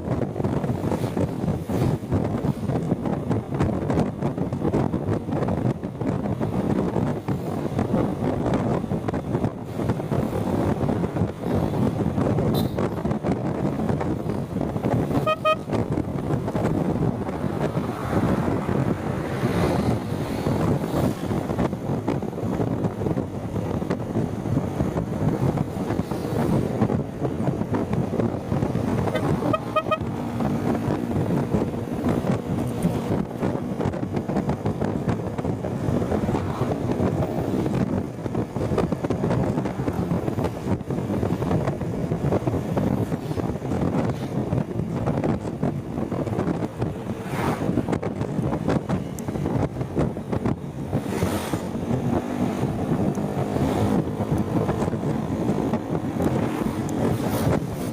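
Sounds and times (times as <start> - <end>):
wind and road noise: 0.0 - 57.9
vehicle horn beeping: 12.5 - 12.9, 15.1 - 15.8, 29.1 - 30.2.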